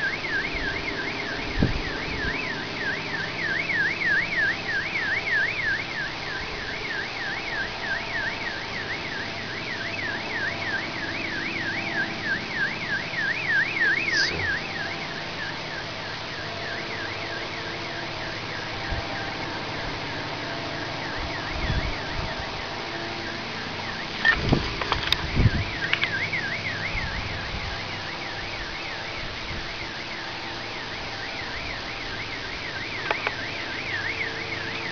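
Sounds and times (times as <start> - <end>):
car alarm siren warbling: 0.0 - 34.9
steady background drone: 13.8 - 14.8.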